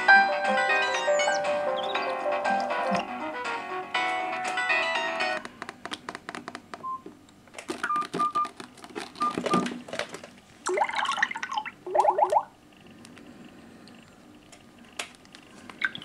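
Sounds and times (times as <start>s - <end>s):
rising electronic tones and chirps: 1.0s - 2.2s.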